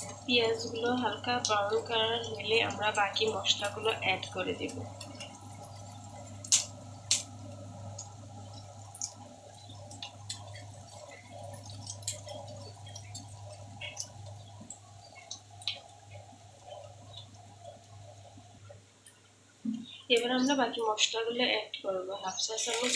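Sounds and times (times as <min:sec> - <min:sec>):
onions sizzling in hot oil: 0:00.0 - 0:18.0
steady low hum: 0:00.0 - 0:22.9.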